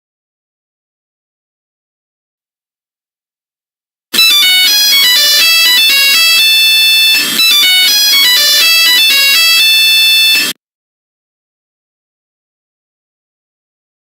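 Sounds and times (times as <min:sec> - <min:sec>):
fast electronic melody: 0:04.2 - 0:10.6.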